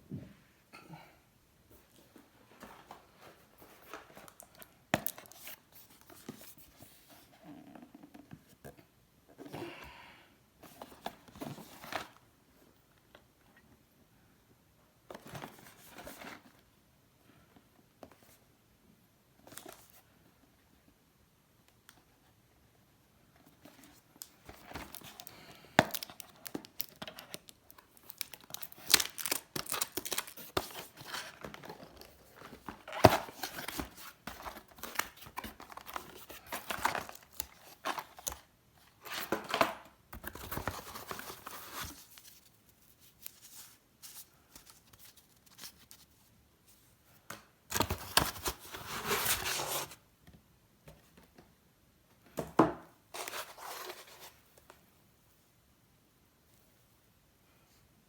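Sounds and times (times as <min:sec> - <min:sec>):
cardboard handling: 0:23.7 - 0:38.4
plastic crinkling: 0:24.6 - 0:37.6
packaging tearing: 0:25.9 - 0:30.8.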